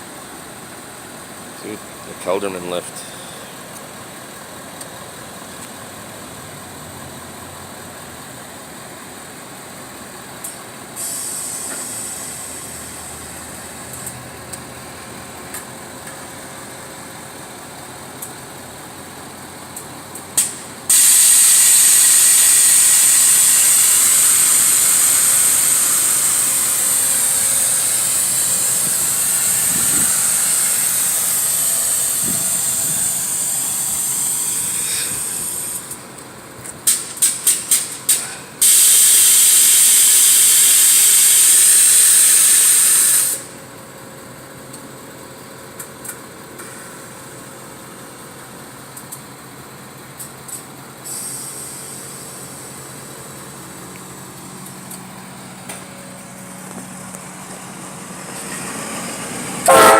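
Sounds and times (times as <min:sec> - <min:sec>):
air suspension hissing: 0:11.0 - 0:14.1, 0:20.3 - 0:36.2, 0:36.8 - 0:43.6, 0:51.0 - 0:59.9.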